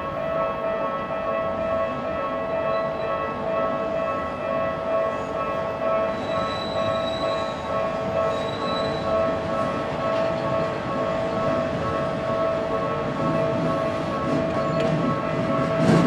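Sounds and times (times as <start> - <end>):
train rumbling over rails: 0.0 - 16.0
high wheel squeal: 6.1 - 9.2.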